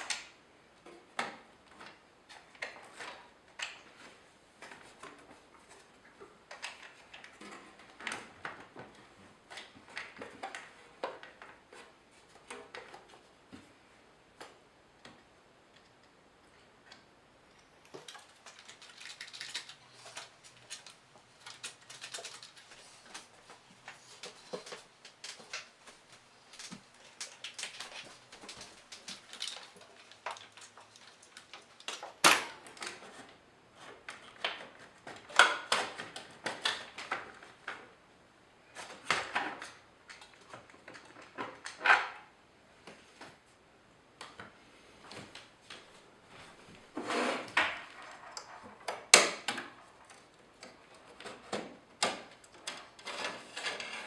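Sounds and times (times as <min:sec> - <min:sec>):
plastic and metal parts clattering: 0:17.8 - 0:37.9, 0:46.7 - 0:54.0.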